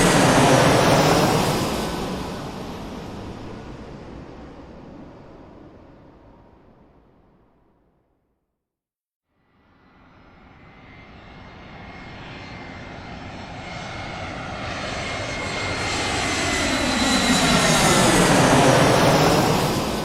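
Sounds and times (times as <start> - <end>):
high engine whine: 0.0 - 3.8
airplane engine passing: 0.0 - 7.1, 9.9 - 20.0.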